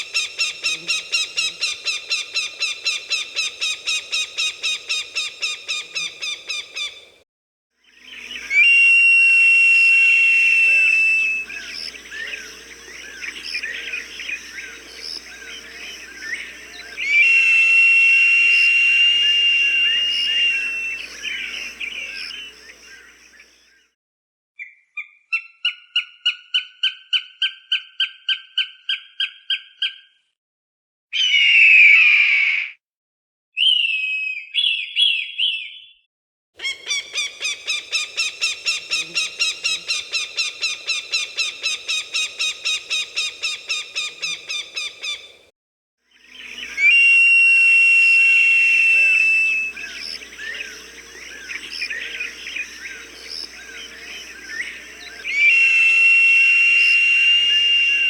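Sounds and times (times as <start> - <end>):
hawk calls: 0.0 - 7.1, 10.5 - 23.1, 36.6 - 45.4, 46.3 - 58.0
hawk screaming: 17.0 - 22.2, 46.7 - 50.8, 53.8 - 58.0.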